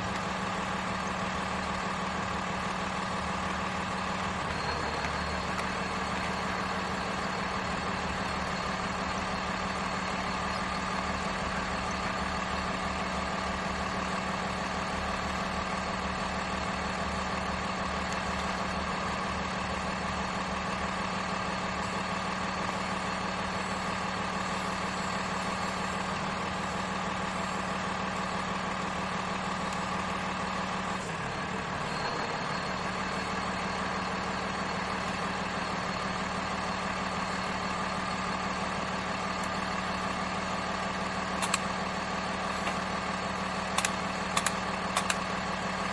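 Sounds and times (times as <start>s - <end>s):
model motor hum: 21.8s - 45.9s.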